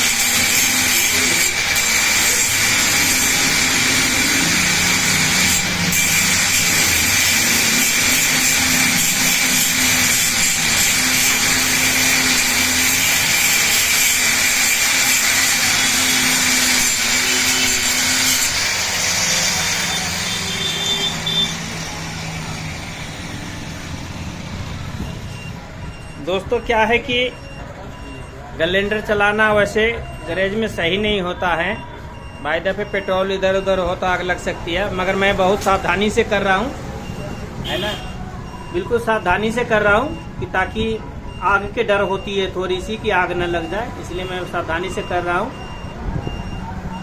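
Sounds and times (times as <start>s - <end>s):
angle grinder grinding steel: 0.0s - 25.4s.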